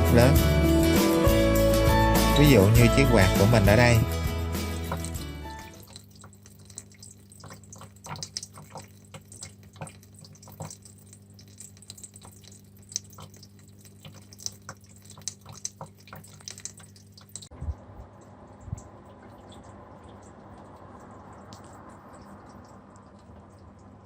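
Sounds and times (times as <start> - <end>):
air cooler humming: 0.0 - 6.0
water dripping and splashing: 2.4 - 24.0.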